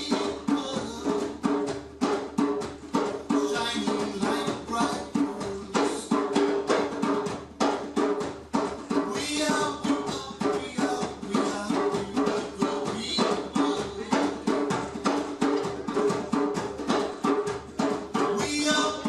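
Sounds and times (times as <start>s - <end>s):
hand percussion rhythm: 0.0s - 19.0s.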